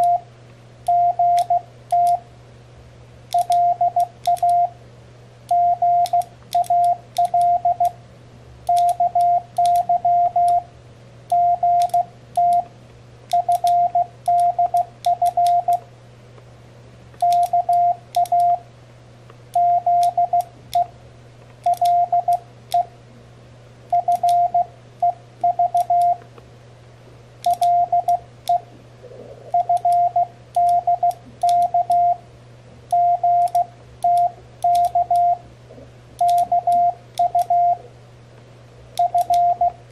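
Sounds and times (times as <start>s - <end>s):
morse code beep tone: 0.0s - 0.2s, 0.9s - 2.2s, 3.4s - 4.7s, 5.5s - 7.9s, 8.7s - 10.7s, 11.3s - 12.7s, 13.4s - 15.8s, 17.2s - 18.6s, 19.6s - 20.9s, 21.7s - 22.9s, 23.9s - 26.2s, 27.5s - 28.7s, 29.5s - 32.2s, 32.9s - 35.4s, 36.2s - 37.8s, 39.0s - 39.8s
microswitch clicks: 0.8s - 2.2s, 3.3s - 4.7s, 5.5s - 8.0s, 8.6s - 10.7s, 11.3s - 15.9s, 17.2s - 18.6s, 19.5s - 20.9s, 21.5s - 22.9s, 23.9s - 26.4s, 27.4s - 28.7s, 29.6s - 32.2s, 32.9s - 35.4s, 36.2s - 37.8s, 39.0s - 39.8s.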